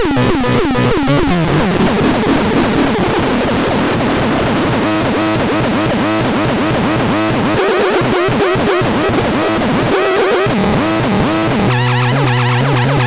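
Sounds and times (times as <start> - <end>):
warbling siren: 0.0 - 4.0, 7.6 - 8.8, 11.7 - 13.0.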